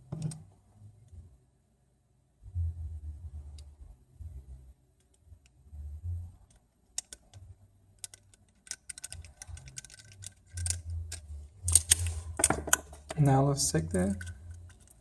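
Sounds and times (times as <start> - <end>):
tools clicking and tapping: 6.9 - 7.4, 8.0 - 13.2, 14.0 - 15.0.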